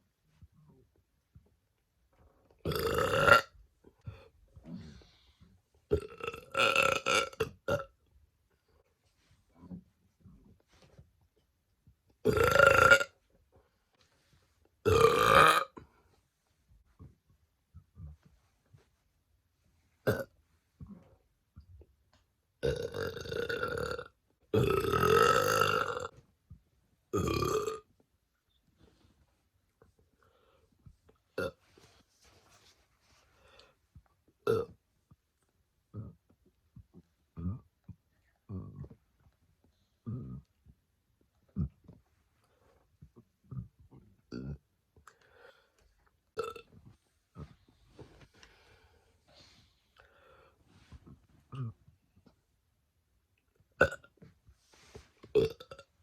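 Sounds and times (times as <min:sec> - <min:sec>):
woman burping: 0:02.7 - 0:03.5, 0:12.2 - 0:13.1, 0:14.9 - 0:15.8, 0:27.1 - 0:27.8.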